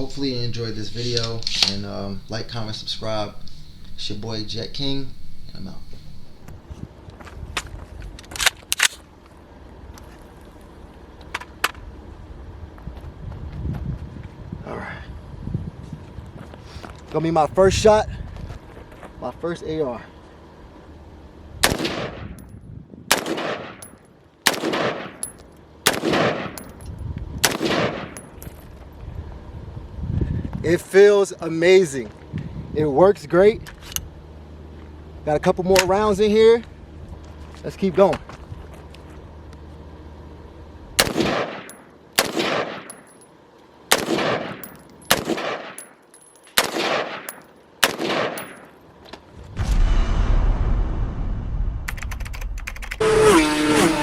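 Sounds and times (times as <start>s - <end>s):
rifle shots echoing: 0.0s - 6.6s, 21.6s - 22.3s, 23.1s - 25.2s, 25.9s - 26.7s, 27.4s - 28.2s, 41.0s - 43.1s, 43.9s - 45.9s, 46.6s - 48.7s.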